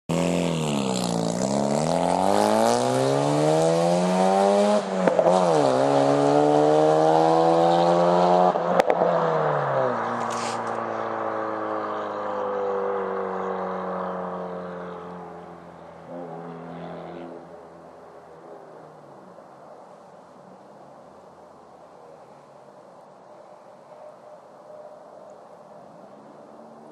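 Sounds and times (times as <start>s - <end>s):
rotary engine revving: 0.1s - 9.0s.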